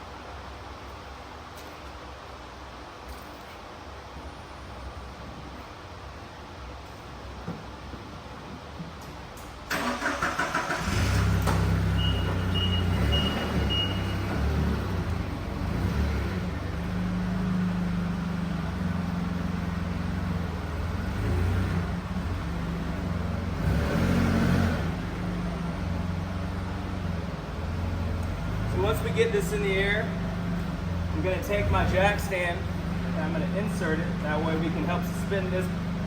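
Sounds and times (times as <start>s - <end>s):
forklift engine starting and running: 9.4s - 36.0s
high beeps: 12.0s - 14.2s.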